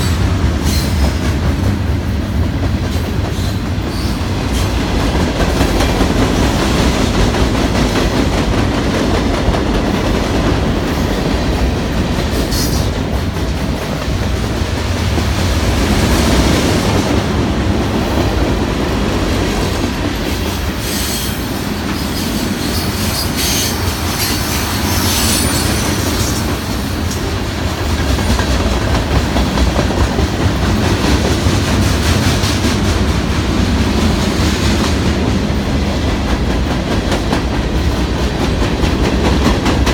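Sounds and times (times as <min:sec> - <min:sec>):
clickety-clack over rail joints: 0:00.0 - 0:39.9
train wheels rumbling on rails: 0:00.0 - 0:39.9
high-pitched wheel squeals: 0:22.1 - 0:26.4.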